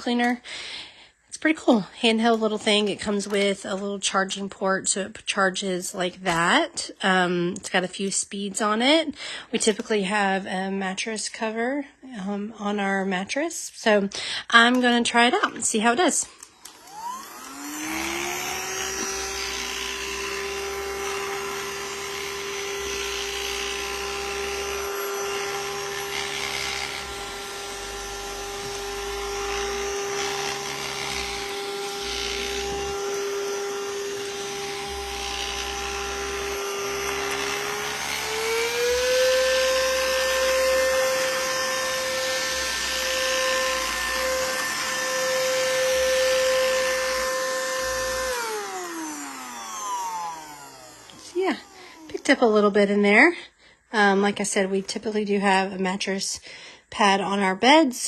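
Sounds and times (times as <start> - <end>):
vacuum cleaner motor whine: 16.5 - 52.8.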